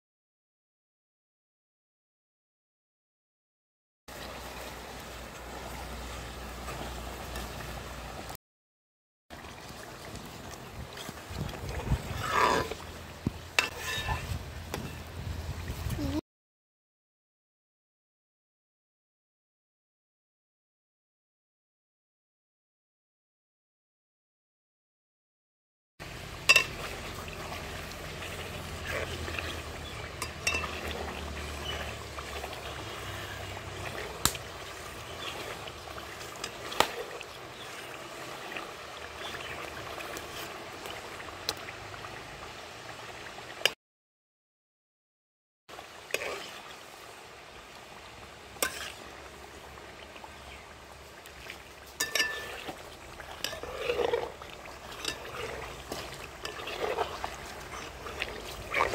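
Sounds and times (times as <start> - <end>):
oil bubbling in a pan: 9.3 - 16.2, 26.0 - 43.8, 45.7 - 58.9.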